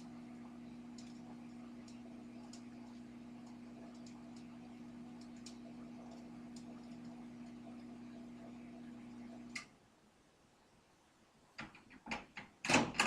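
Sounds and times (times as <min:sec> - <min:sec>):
microwave oven click: 0:00.0 - 0:09.7
microwave oven humming: 0:00.0 - 0:09.7
faint irregular ticks: 0:00.9 - 0:04.5.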